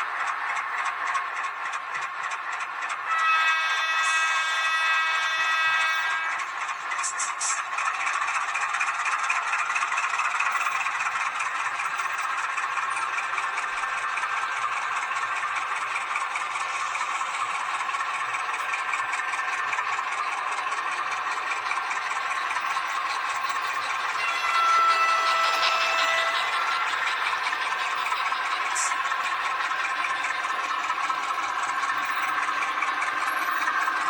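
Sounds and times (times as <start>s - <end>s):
model train running on track: 0.0s - 34.0s.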